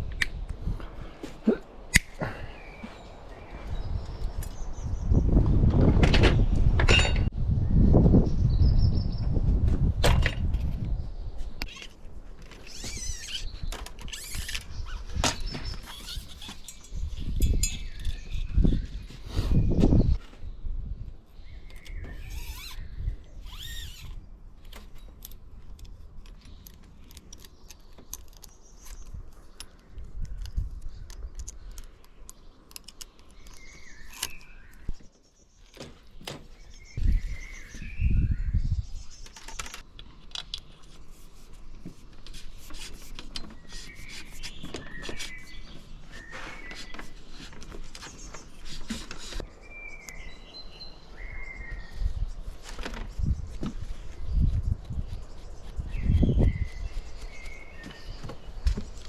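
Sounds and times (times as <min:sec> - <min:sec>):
bird chirps: 0:27.4 - 0:39.8, 0:43.2 - 0:59.0.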